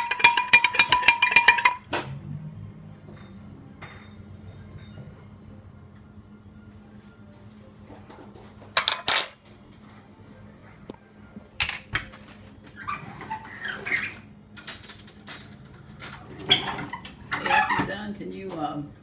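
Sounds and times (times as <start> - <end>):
dishes and utensils clattering: 0.0 - 2.0, 8.2 - 9.4, 14.6 - 17.9.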